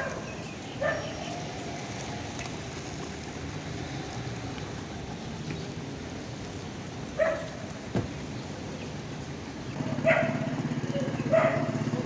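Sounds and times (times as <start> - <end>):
dog barking: 0.0 - 1.1, 7.2 - 7.6, 10.0 - 10.5, 11.2 - 11.9.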